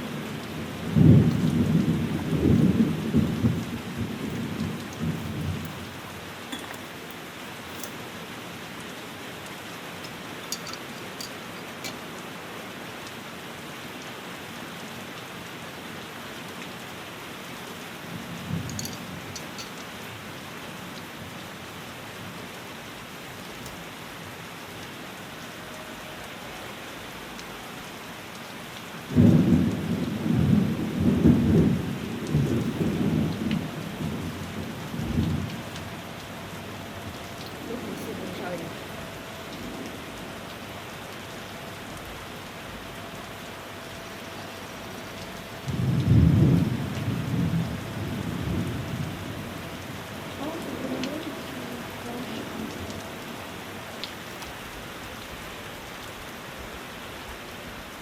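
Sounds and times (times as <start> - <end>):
thunder rumbling: 0.0 - 6.3, 29.2 - 38.9
steady rain: 0.0 - 58.0.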